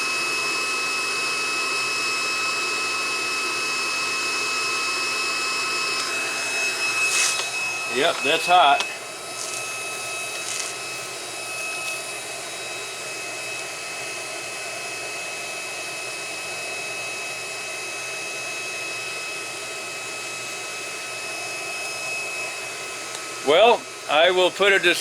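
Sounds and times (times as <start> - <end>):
high-pitched whine: 6.0 - 12.3.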